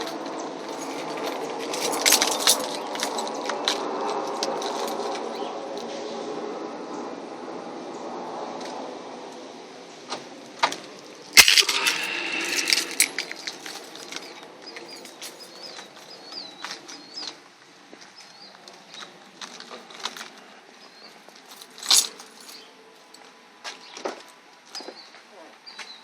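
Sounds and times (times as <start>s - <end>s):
bird chirping: 11.4s - 13.6s
sharp bang: 11.4s - 13.8s.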